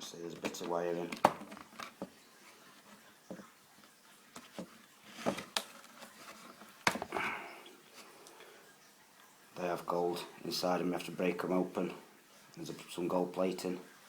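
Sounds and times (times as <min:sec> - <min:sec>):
rustling: 0:00.1 - 0:08.3
plastic clicks and knocks: 0:00.3 - 0:02.2, 0:04.4 - 0:06.0, 0:06.8 - 0:07.1.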